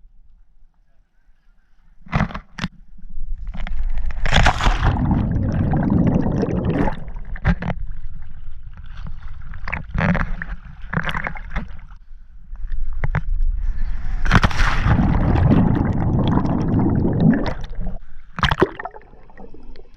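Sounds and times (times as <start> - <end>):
water sloshing and gurgling: 3.4 - 12.0, 12.6 - 19.9
water splashing: 4.1 - 12.0, 14.1 - 19.9
steady low rumble: 12.0 - 18.4.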